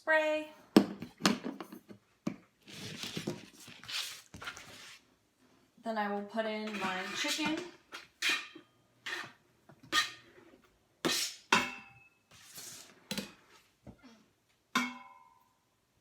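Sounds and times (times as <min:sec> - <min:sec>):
utensil clinking against metal pot: 0:14.8 - 0:15.4.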